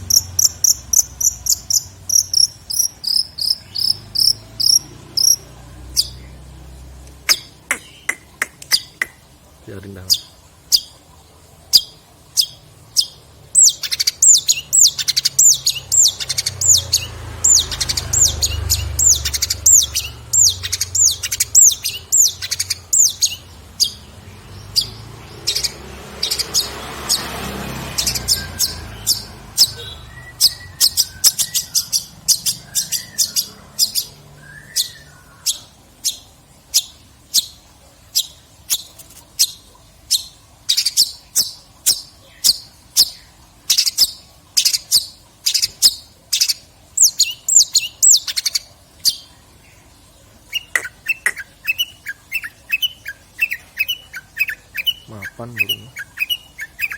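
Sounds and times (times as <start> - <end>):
shrike singing: 0.0 - 6.4, 11.7 - 37.6, 50.5 - 56.9.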